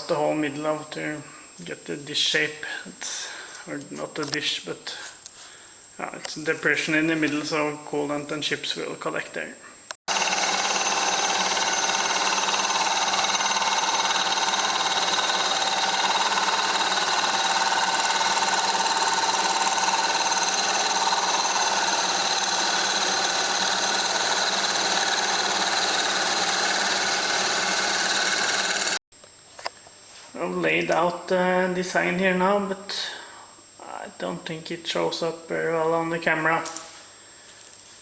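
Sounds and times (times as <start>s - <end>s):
milling machine cutting metal: 10.1s - 29.0s.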